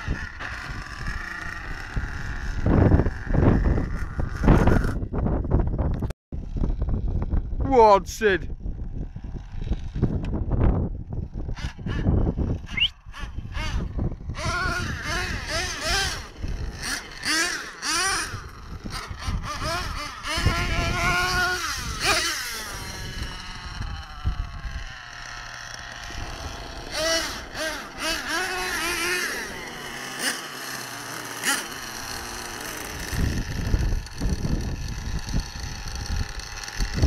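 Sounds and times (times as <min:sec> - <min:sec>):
rc truck engines revving: 0:00.0 - 0:07.5, 0:08.6 - 0:37.0.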